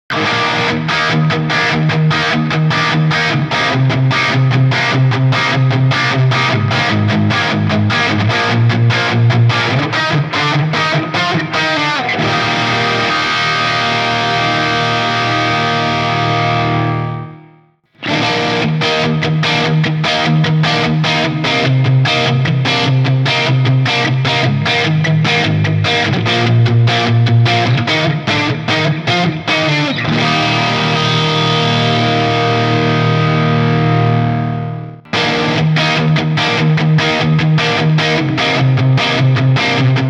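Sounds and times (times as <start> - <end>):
distorted electric guitar riff: 0.1 - 40.0
guitar chord ringing out: 25.8 - 39.8.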